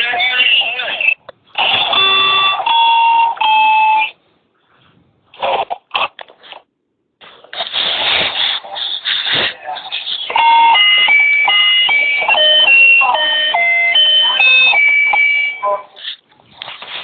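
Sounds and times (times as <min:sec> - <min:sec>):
held electronic tones: 0:01.6 - 0:04.1, 0:10.3 - 0:16.0.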